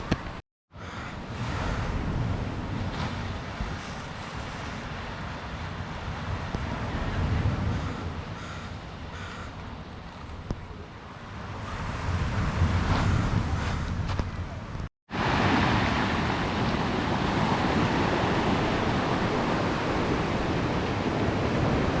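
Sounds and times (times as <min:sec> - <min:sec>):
wind on microphone: 0:00.0 - 0:22.0
bird cawing: 0:00.7 - 0:01.9, 0:07.7 - 0:10.5, 0:13.0 - 0:14.0
ocean surf on beach: 0:01.0 - 0:14.0, 0:14.6 - 0:22.0.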